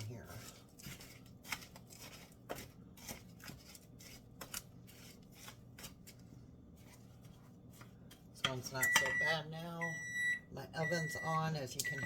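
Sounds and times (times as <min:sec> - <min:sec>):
faint packaging rustling: 0:00.0 - 0:08.4.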